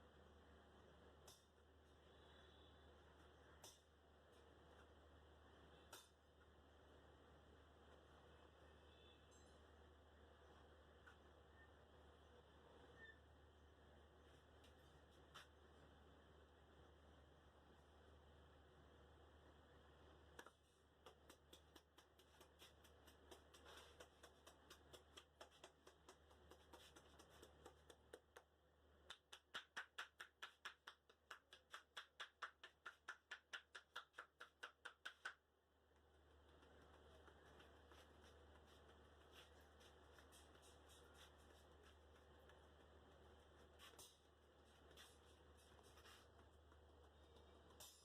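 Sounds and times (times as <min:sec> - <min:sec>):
hands tapping and rubbing head: 0:20.4 - 0:35.4, 0:36.5 - 0:46.8
rhythmic hand slaps on head: 0:21.0 - 0:35.4.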